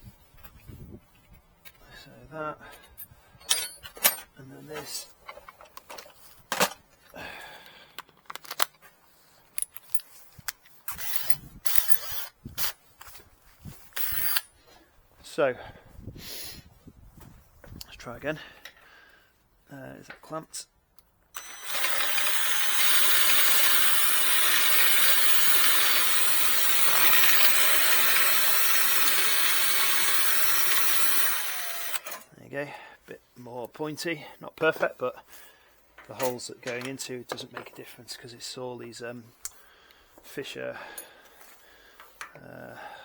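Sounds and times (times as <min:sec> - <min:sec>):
metal tools rattling: 0:02.9 - 0:06.7, 0:09.6 - 0:10.2
drill grinding metal: 0:10.9 - 0:12.3, 0:14.0 - 0:14.5, 0:21.4 - 0:32.2.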